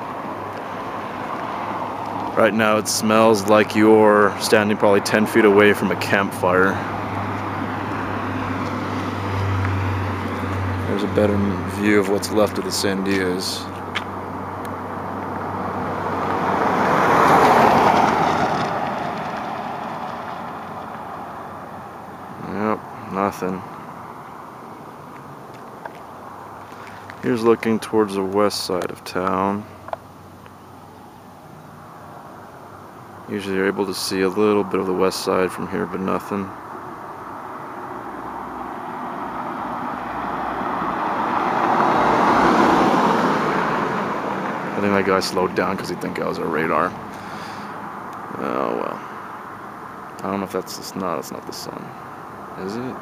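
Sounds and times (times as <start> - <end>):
car driving past: 0.0 - 27.6, 36.9 - 50.4
road vehicle passing by: 0.0 - 53.0.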